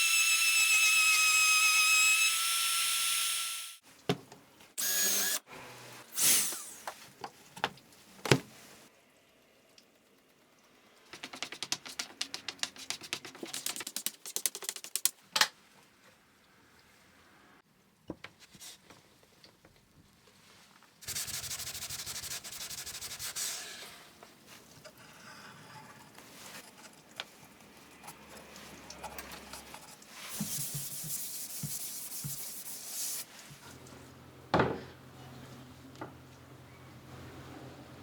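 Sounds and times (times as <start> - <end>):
sanding plywood: 21.0 - 23.8, 30.3 - 33.3.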